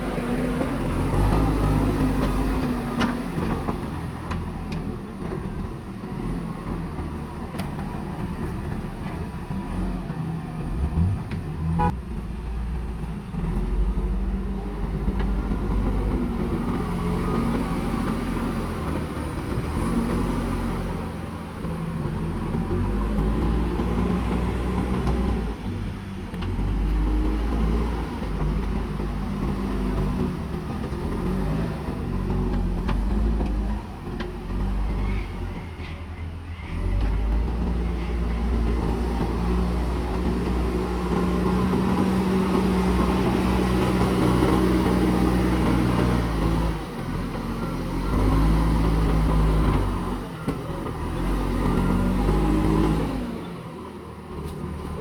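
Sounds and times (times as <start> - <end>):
diesel engine revving: 0.0 - 55.0.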